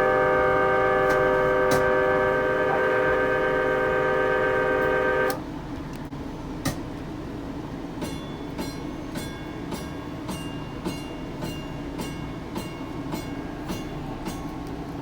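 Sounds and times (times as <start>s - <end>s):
ringing warning gong: 0.0s - 5.4s
train horn chord: 0.0s - 5.4s
click: 1.0s - 1.9s.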